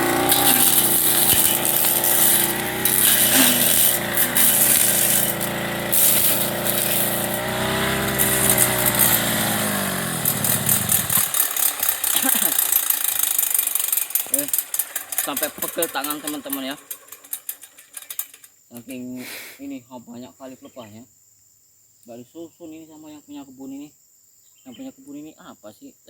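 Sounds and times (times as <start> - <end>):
blade cutting weeds: 0.0 - 18.4
brush cutter engine running: 0.0 - 18.5.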